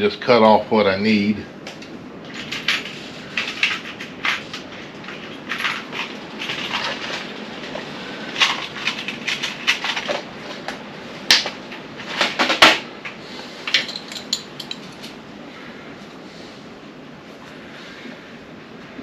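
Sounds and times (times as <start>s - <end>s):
hand tools and clamps clinking: 13.7s - 15.2s.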